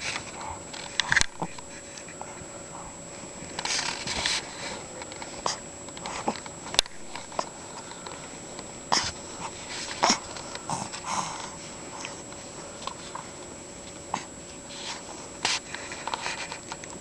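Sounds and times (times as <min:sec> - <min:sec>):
soft clicks and breaths: 0:03.5 - 0:08.7.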